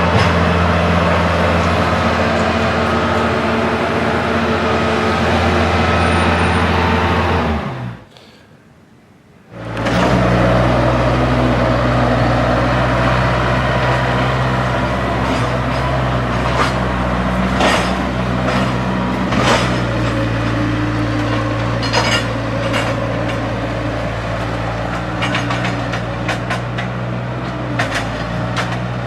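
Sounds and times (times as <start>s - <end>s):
large engine running: 0.0s - 8.1s, 9.5s - 29.0s
sharp knocks and crashes: 17.4s - 20.5s.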